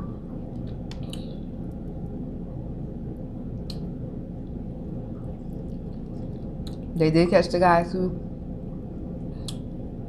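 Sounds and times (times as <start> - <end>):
steady low hum: 0.0 - 10.0
wet mouth clicks from eating: 0.6 - 1.3.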